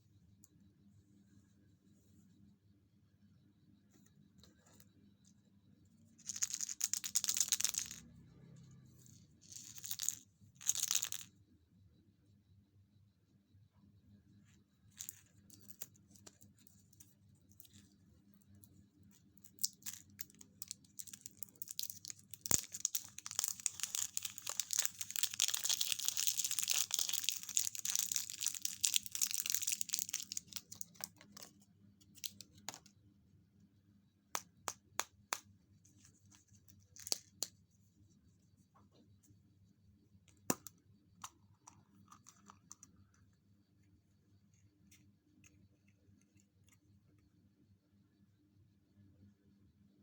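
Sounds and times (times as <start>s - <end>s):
wrapper crinkling and tearing: 21.0s - 31.0s.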